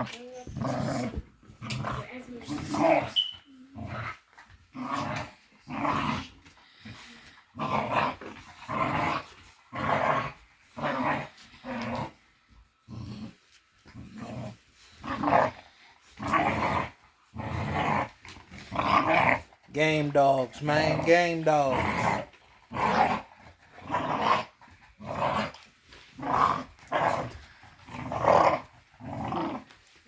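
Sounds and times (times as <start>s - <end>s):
dogs growling: 0.0s - 30.0s.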